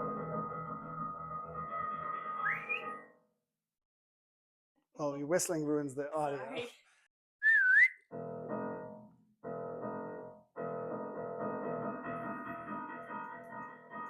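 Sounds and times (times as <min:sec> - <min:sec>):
piano-like keyboard music: 0:00.0 - 0:03.1, 0:08.1 - 0:14.0
person whistling: 0:02.4 - 0:03.0, 0:07.4 - 0:08.0.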